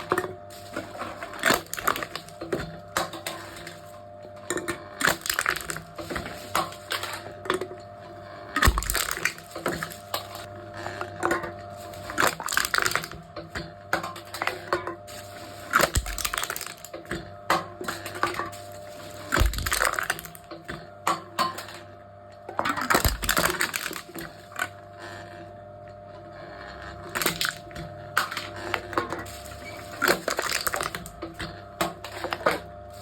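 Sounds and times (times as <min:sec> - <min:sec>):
steady hum: 0:00.0 - 0:24.7
cans crushed by machine: 0:00.0 - 0:25.2, 0:26.6 - 0:33.0
heavy thumps: 0:08.6 - 0:09.2, 0:19.3 - 0:20.0.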